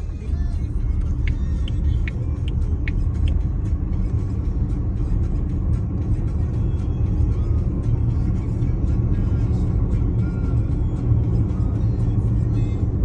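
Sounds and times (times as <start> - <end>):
car road rumble: 0.0 - 13.0
light ticks: 1.0 - 3.5.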